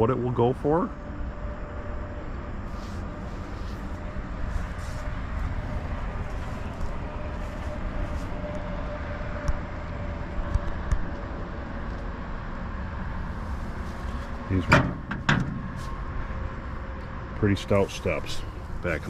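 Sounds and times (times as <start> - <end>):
faint wavering hum: 0.0 - 19.0
low rumble and hiss: 0.0 - 19.0.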